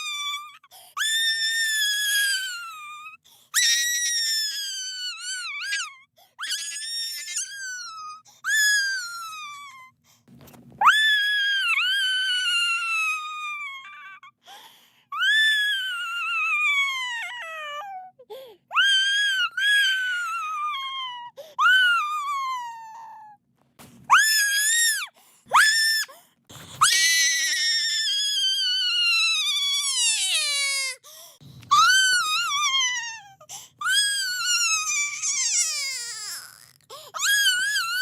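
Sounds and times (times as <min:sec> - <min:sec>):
baby crying: 0:31.7 - 0:38.0.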